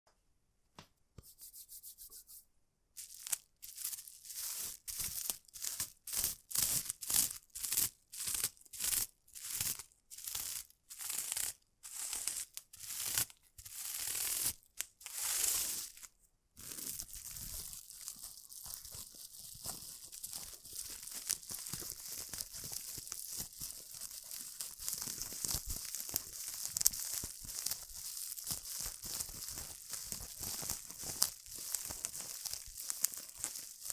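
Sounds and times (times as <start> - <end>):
bubble wrap crackling clicks: 3.0 - 7.8, 16.7 - 33.9
bubble wrap crinkling: 3.0 - 33.9.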